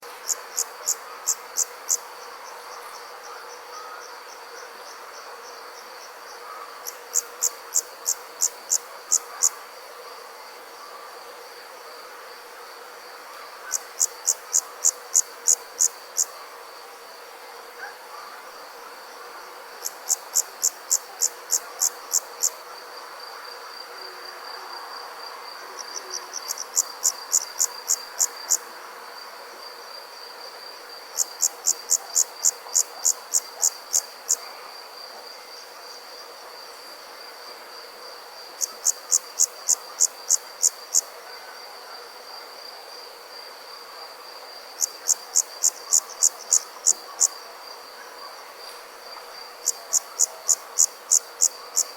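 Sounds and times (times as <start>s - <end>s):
sharp cricket chirps: 0.1s - 17.2s, 17.8s - 51.9s
cricket trill: 25.2s - 36.0s, 37.8s - 51.9s.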